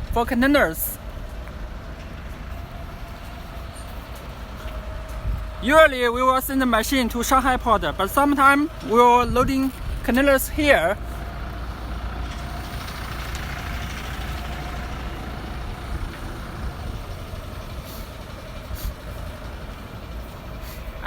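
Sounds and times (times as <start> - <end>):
low engine rumble: 0.0 - 21.0.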